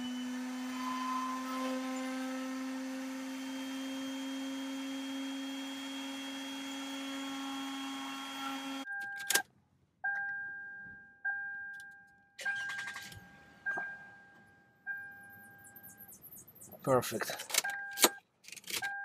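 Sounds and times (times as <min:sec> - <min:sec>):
key-cutting machine running: 0:00.0 - 0:08.8.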